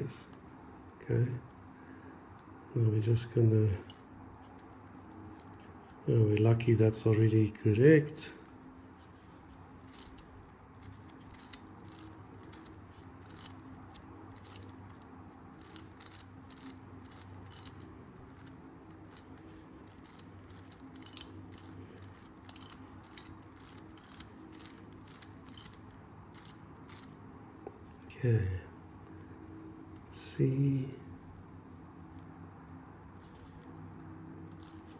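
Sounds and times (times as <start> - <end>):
steady low hum: 0.0 - 34.9
puzzle cube clicking: 9.8 - 27.1.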